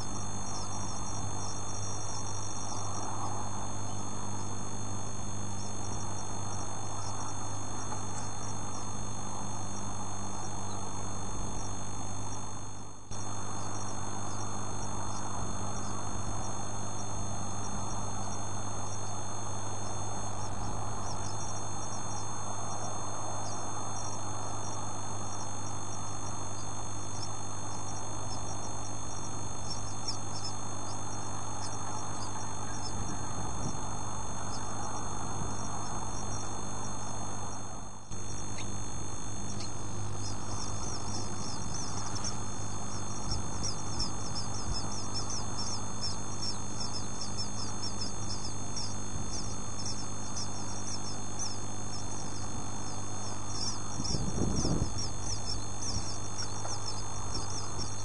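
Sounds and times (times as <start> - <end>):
electrical hum and hiss: 0.0 - 58.0
bird chicks cheeping: 13.4 - 37.6, 38.2 - 58.0.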